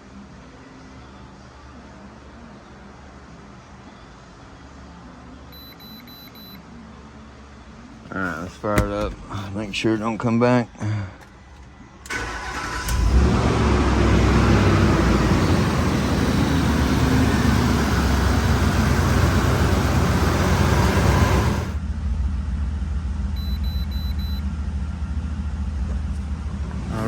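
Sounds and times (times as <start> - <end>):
car engine idling: 11.2 - 21.8, 25.2 - 27.0.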